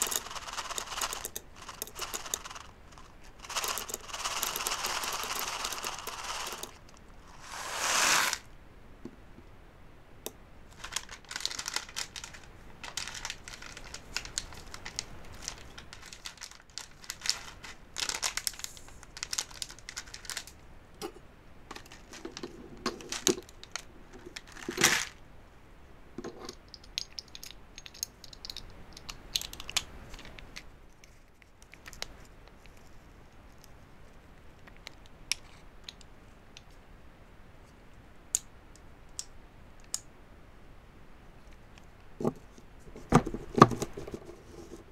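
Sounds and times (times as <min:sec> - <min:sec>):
packaging crinkling and rustling: 0:10.7 - 0:20.6.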